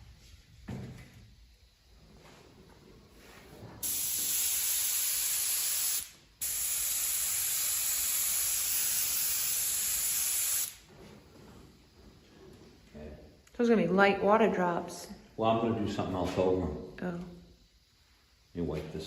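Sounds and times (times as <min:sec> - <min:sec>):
airbrush spraying hiss: 0:03.1 - 0:10.9.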